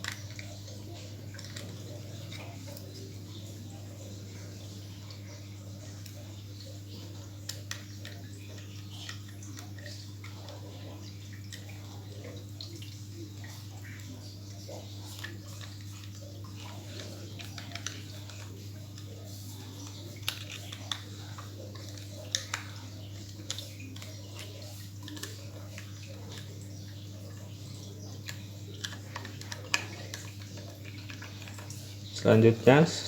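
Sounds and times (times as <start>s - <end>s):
small clicks and taps of handling: 28.2s - 31.8s.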